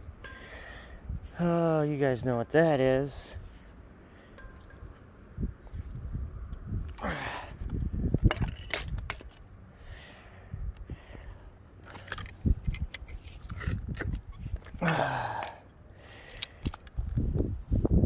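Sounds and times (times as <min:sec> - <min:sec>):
metal scrap clinking: 0:00.2 - 0:00.9, 0:04.4 - 0:05.1
person exclaiming: 0:01.4 - 0:01.9, 0:14.8 - 0:15.6.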